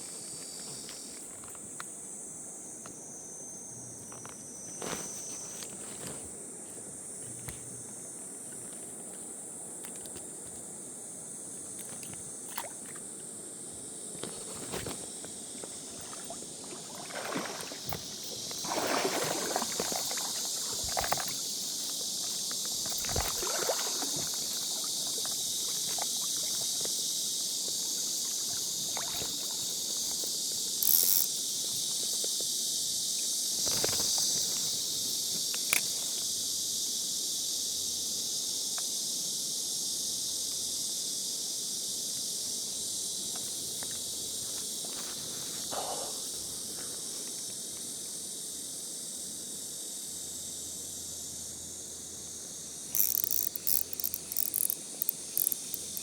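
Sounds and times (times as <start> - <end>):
high-pitched insect drone: 14.7 - 47.6, 48.3 - 56.0
water sloshing around wading legs: 15.6 - 27.0, 27.7 - 30.3
sharp clicks: 53.0 - 56.0.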